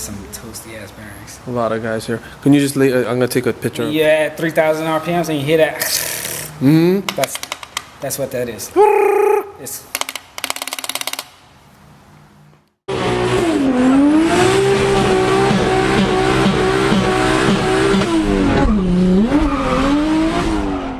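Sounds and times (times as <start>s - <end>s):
car engine revving: 12.9s - 20.9s
tire squeal: 18.6s - 20.7s.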